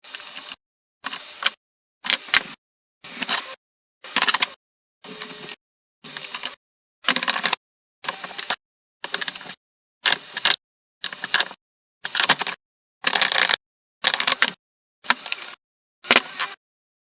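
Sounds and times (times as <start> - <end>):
clicking and clattering workshop noise: 0.0 - 16.6.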